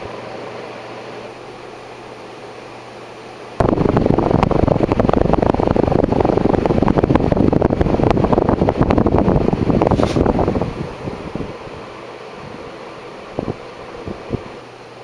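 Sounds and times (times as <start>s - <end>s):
ceiling fan whoosh: 0.0s - 15.0s
wind noise on microphone: 3.6s - 12.7s, 13.3s - 14.6s.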